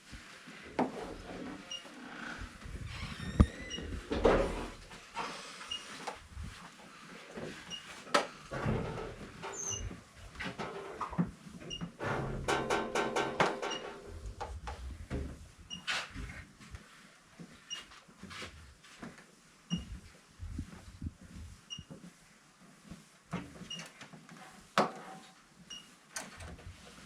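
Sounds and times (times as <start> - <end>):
handling knocks and rubbing: 0.1 - 1.7, 5.9 - 19.2.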